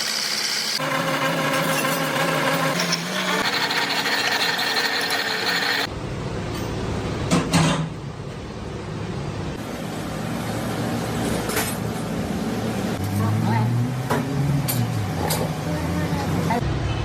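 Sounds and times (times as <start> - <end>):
machinery whining: 0.0 - 5.9.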